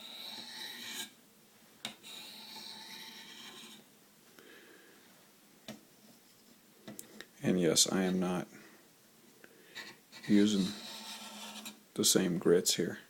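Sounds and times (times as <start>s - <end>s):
knife scraping on sharpening stone: 0.0s - 1.1s, 2.0s - 3.8s, 10.2s - 11.8s.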